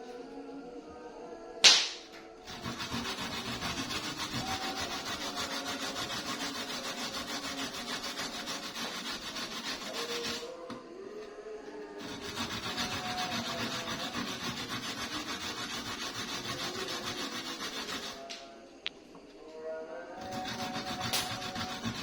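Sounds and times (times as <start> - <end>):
sharp knock: 1.6 - 2.1
ginger grated on a grater: 2.5 - 10.6, 11.9 - 18.3, 20.2 - 22.0.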